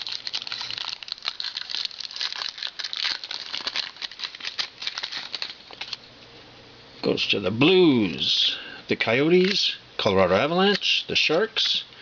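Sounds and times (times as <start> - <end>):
card pack wrapper crinkling: 0.0 - 6.0.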